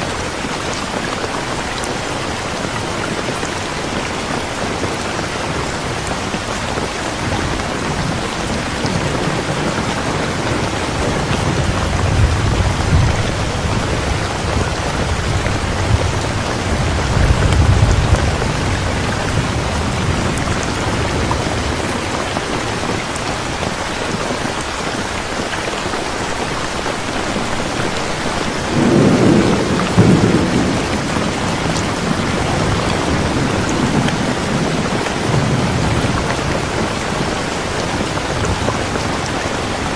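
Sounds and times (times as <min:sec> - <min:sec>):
heavy rain falling: 0:00.0 - 0:39.9
thunder rumbling: 0:03.8 - 0:23.1, 0:27.8 - 0:39.3.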